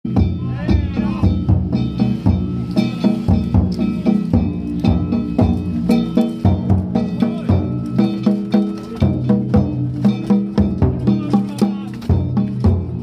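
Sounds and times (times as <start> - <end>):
hand gongs ringing: 0.1 - 13.0
taiko drum beating: 0.1 - 13.0.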